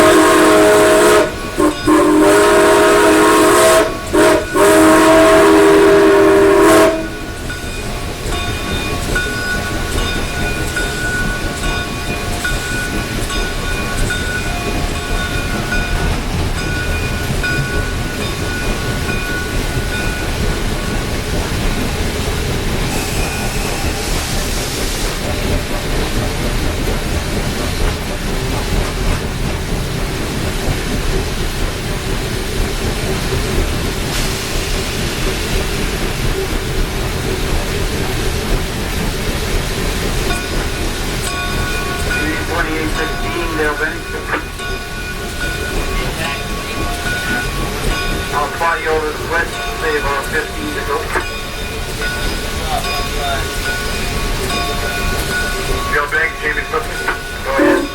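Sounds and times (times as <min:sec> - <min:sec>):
steam whistle blasts: 0:00.0 - 0:07.2, 0:57.1 - 0:57.9
locomotive rumble and hiss: 0:00.0 - 0:57.9.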